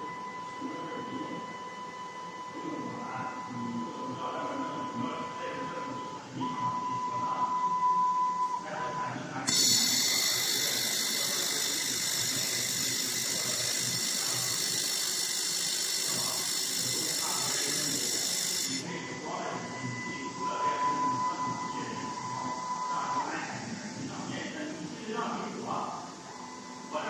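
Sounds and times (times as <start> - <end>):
mid-pitched machine whine: 0.0 - 27.0
welding machine hissing: 9.5 - 18.8.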